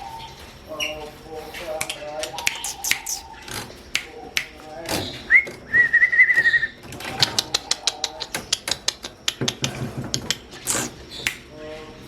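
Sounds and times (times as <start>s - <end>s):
sharp dry clicking ticks: 1.6s - 5.0s, 7.0s - 11.5s
bird whistled song: 1.8s - 8.7s.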